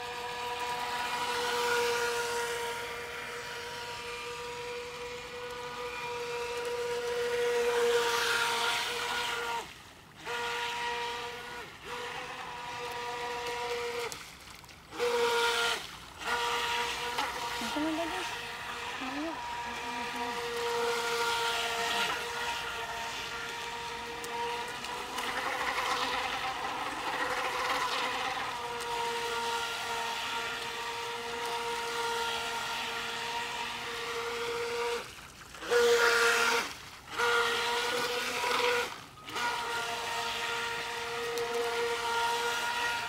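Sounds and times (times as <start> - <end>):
electric motor whining: 0.0 - 14.3, 14.9 - 43.0.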